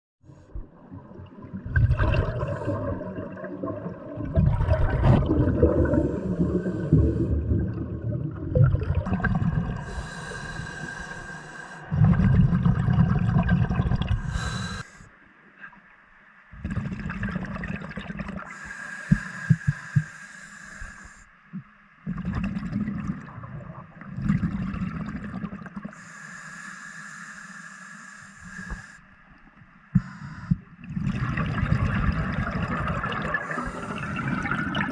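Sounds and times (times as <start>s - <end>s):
low bubbling exhale: 0.4s - 14.9s, 30.0s - 34.9s
regulator hissing inhale: 5.9s - 7.4s, 9.8s - 11.9s, 14.2s - 15.2s, 18.5s - 21.4s, 25.9s - 29.1s, 29.9s - 30.7s, 33.4s - 34.3s.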